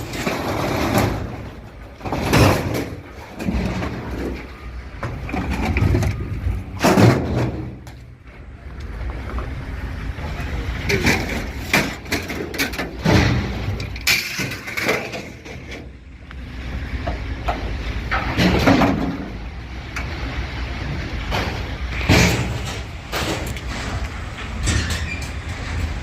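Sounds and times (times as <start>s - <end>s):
low vehicle rumble: 0.0s - 26.0s
irregular bangs and knocks: 5.0s - 8.0s.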